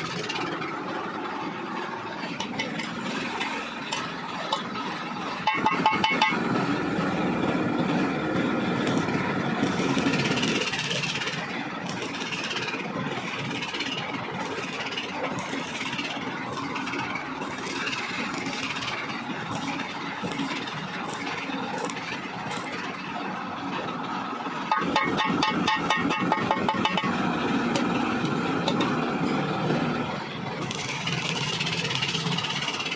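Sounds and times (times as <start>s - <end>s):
welding arc crackling and hissing: 0.0s - 0.6s, 2.8s - 23.2s, 30.6s - 32.9s.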